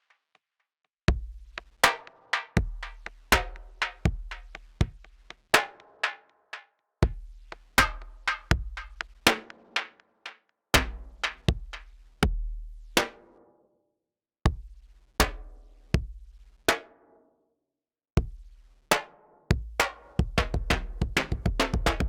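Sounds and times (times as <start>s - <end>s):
deep kick drum thumps: 1.1s - 1.8s, 7.0s - 9.2s, 10.8s - 12.6s, 14.5s - 14.9s, 16.0s - 16.4s, 18.2s - 18.6s, 19.5s - 22.0s.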